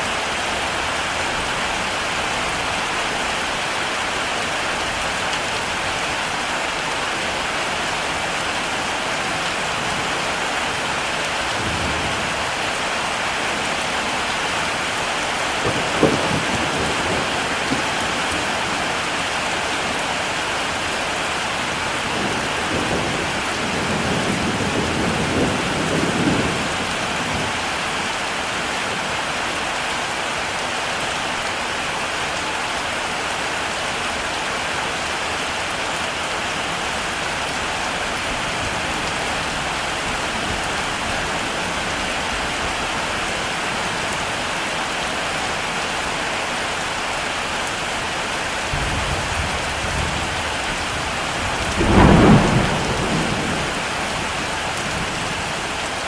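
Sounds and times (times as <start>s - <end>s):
heavy rain falling: 0.0s - 56.0s
thunder rumbling: 15.5s - 20.9s, 21.5s - 27.7s, 48.6s - 55.6s.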